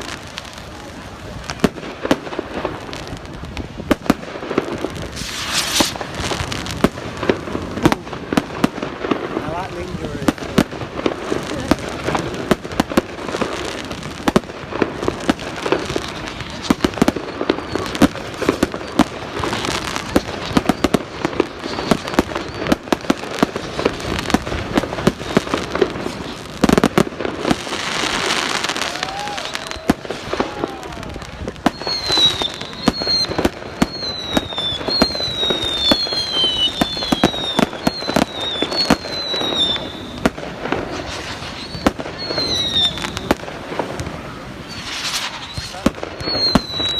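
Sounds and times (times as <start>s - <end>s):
crackling hiss: 0.0s - 46.9s
fireworks bangs and crackles: 0.0s - 46.9s
falling firework whistles: 3.9s - 8.8s, 15.2s - 46.9s.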